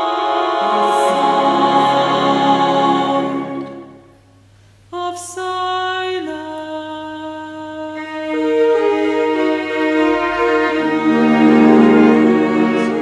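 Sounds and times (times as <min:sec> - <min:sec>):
person singing: 0:00.0 - 0:04.0, 0:05.0 - 0:13.0
slow mournful music: 0:00.0 - 0:04.1, 0:08.0 - 0:13.0.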